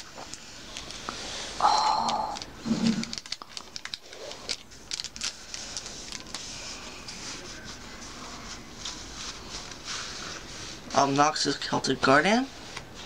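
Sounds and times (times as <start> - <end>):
foil card wrappers crinkling: 1.9 - 7.5.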